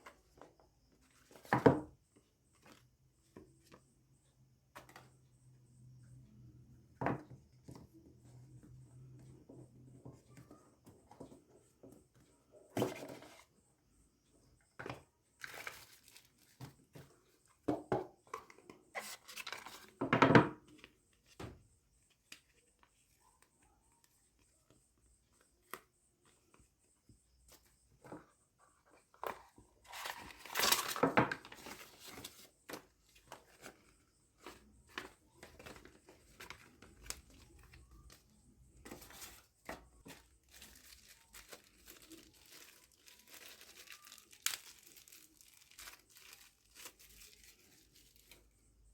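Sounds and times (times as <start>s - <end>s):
packaging rustling and tearing: 15.4s - 16.6s, 29.8s - 32.5s, 40.1s - 48.4s.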